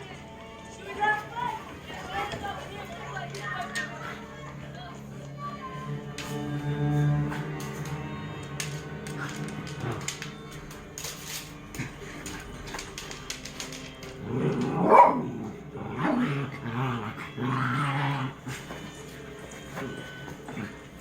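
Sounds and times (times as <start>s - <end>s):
dogs barking and growling: 6.0s - 21.0s.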